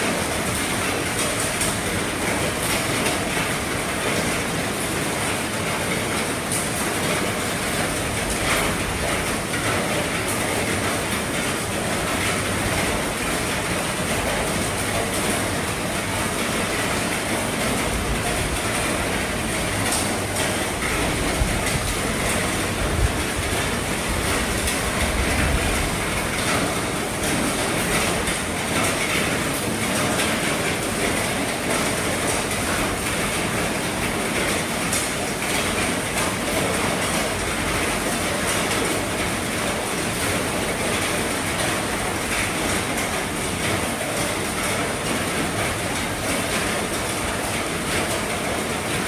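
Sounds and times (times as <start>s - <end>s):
heavy rain on a roof: 0.0s - 49.0s
rain drop ticks: 6.1s - 49.0s.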